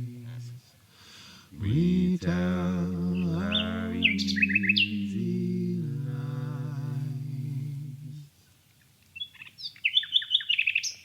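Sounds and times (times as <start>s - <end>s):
held sung note: 1.6s - 8.3s
nightingale singing: 1.7s - 6.2s, 9.1s - 11.0s.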